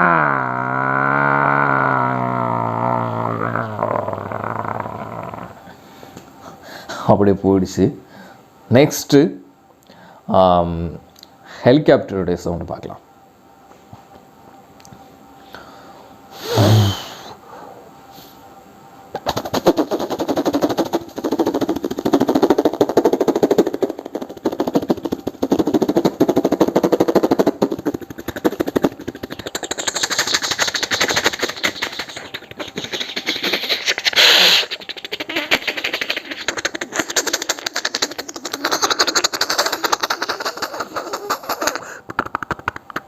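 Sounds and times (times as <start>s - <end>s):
person imitating helicopter: 0.0s - 5.8s, 16.4s - 17.4s, 19.2s - 43.0s
loud hissing burst: 30.2s - 38.4s.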